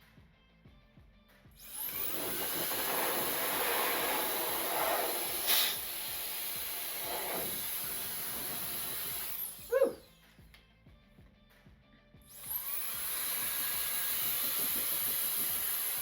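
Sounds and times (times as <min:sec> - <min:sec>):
air duster motor whining: 0:01.6 - 0:10.1, 0:12.4 - 0:16.0
rush of blowing air: 0:02.2 - 0:09.3.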